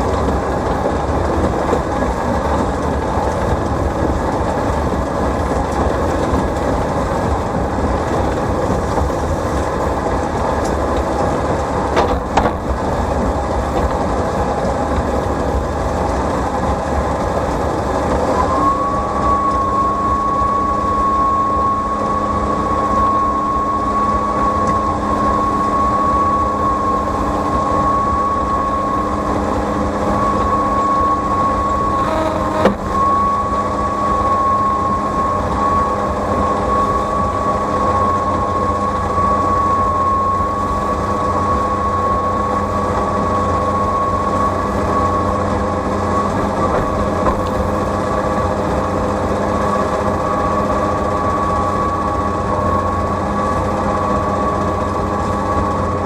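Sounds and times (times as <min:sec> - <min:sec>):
tractor engine under load: 0:05.1 - 0:15.2, 0:32.0 - 0:33.2
high whine with hum: 0:16.9 - 0:56.0.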